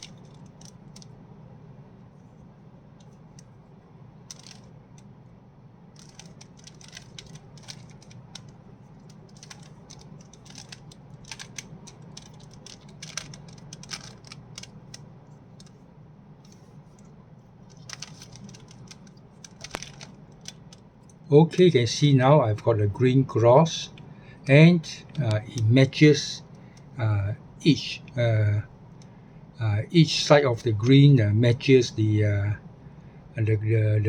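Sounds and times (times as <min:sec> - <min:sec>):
steady low hum: 0:00.0 - 0:34.0
plastic cube clicking: 0:04.3 - 0:04.7, 0:06.0 - 0:15.0, 0:17.7 - 0:20.7.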